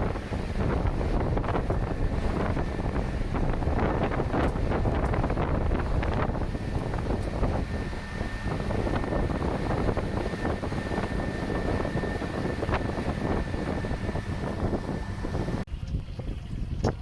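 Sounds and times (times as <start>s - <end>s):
thin steady whine: 0.0s - 15.7s
motorboat engine running: 0.0s - 17.0s
wind buffeting microphone: 0.0s - 17.0s.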